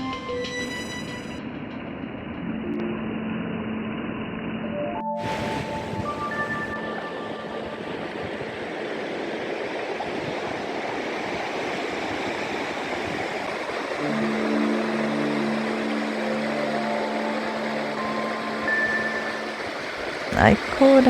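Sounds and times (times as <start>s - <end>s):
steady rushing noise: 1.4s - 21.0s
soft background music: 2.4s - 8.8s, 14.0s - 21.0s.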